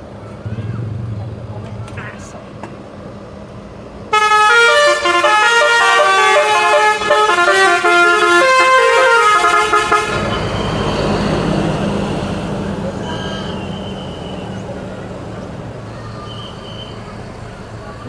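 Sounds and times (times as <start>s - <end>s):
steady rushing noise: 0.0s - 4.2s
bus horn melody: 4.1s - 11.4s.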